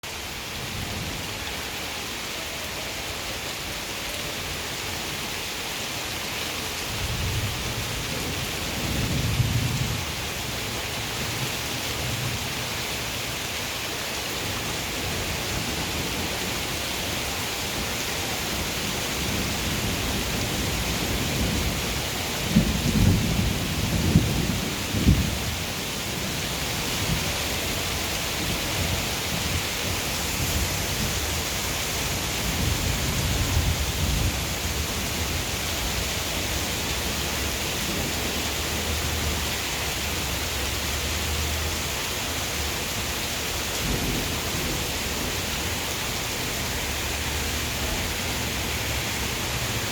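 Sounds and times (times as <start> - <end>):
steady rain hiss: 0.0 - 49.9
low thunder rumble: 19.2 - 39.3.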